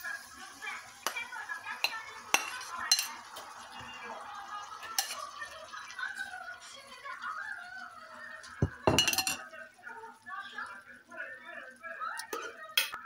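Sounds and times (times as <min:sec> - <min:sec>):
utensils clinking against pots: 0:01.8 - 0:03.5, 0:04.8 - 0:05.4, 0:08.6 - 0:09.5.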